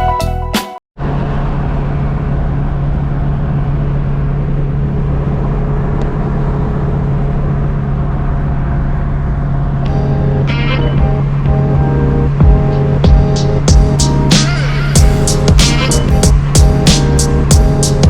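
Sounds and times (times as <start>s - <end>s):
music: 0.0s - 0.8s, 9.9s - 18.0s
engine drone: 1.0s - 18.0s.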